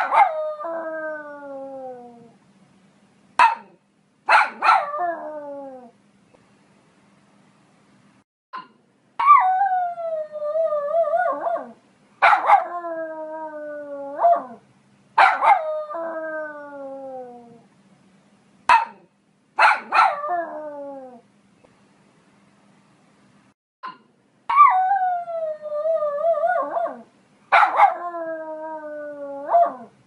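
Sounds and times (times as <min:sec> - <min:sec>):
dog barking: 0:00.0 - 0:00.4, 0:03.4 - 0:04.9, 0:12.2 - 0:12.7, 0:15.2 - 0:15.6, 0:18.7 - 0:20.2, 0:27.5 - 0:28.0
dog yipping: 0:00.0 - 0:00.4, 0:03.4 - 0:03.7, 0:04.3 - 0:04.9, 0:12.2 - 0:12.7, 0:18.7 - 0:19.0, 0:19.6 - 0:20.2
dog howling: 0:24.5 - 0:29.9.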